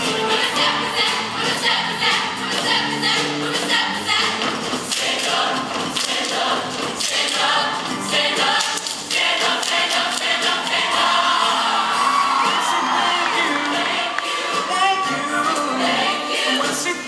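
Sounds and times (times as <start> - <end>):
choir singing: 0.0 - 17.0.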